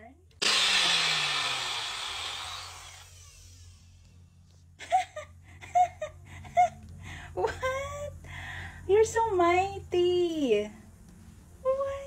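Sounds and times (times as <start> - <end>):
blender motor winding down: 0.4 - 4.1.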